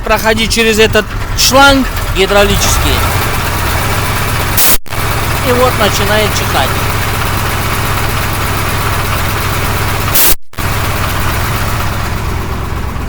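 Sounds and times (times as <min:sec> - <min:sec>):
truck engine running: 0:00.0 - 0:13.0.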